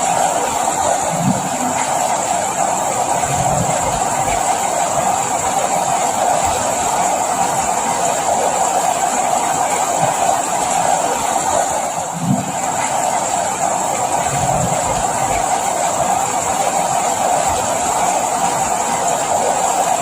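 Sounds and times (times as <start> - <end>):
steady rain falling: 0.0 - 20.0.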